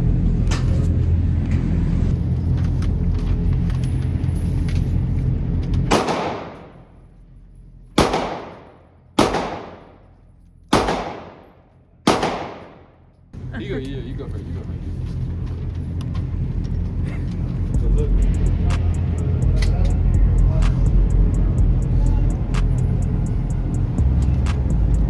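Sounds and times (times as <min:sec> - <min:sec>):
low rumble: 0:00.0 - 0:25.0
gunshots with echo: 0:05.9 - 0:06.9, 0:08.0 - 0:10.1, 0:10.7 - 0:13.0.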